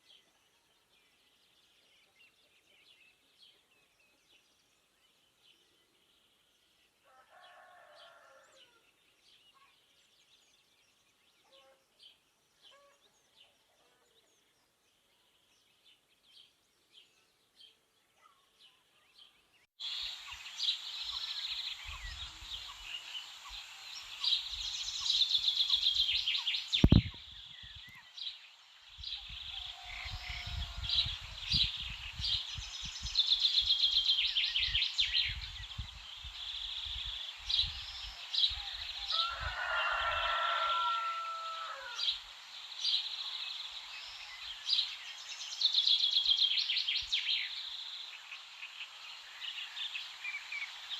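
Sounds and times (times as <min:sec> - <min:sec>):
songbirds trilling: 0:00.0 - 0:50.9
wind buffeting microphone: 0:26.7 - 0:27.9, 0:29.0 - 0:33.7, 0:34.6 - 0:38.9.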